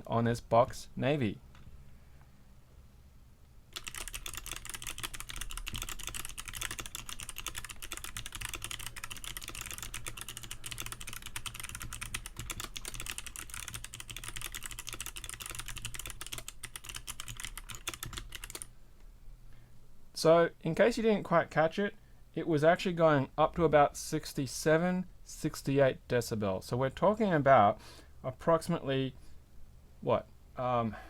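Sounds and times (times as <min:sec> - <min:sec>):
mechanical keyboard typing: 0:03.7 - 0:18.7.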